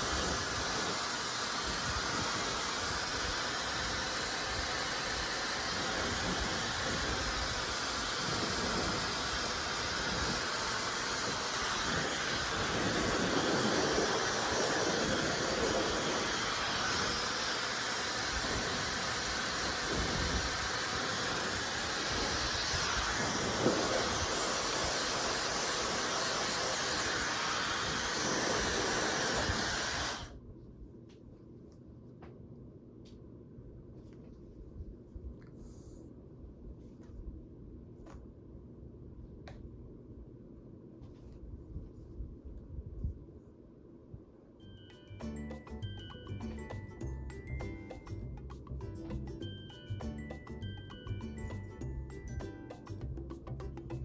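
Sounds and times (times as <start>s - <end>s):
hair dryer blowing air: 0.0s - 30.4s.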